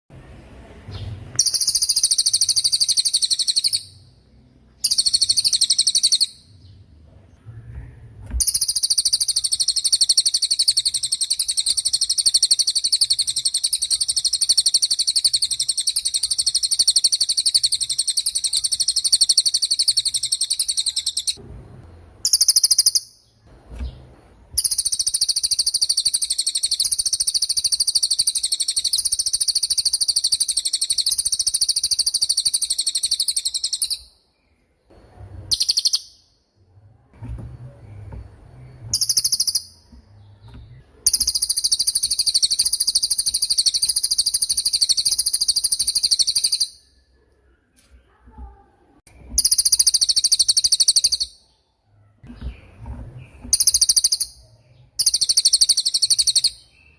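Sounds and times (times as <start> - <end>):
songbird trilling: 1.3 - 4.1, 4.8 - 6.7, 8.4 - 21.4, 22.2 - 23.3, 24.6 - 34.2, 35.5 - 36.3, 37.8 - 47.0, 49.4 - 51.6, 53.4 - 56.9.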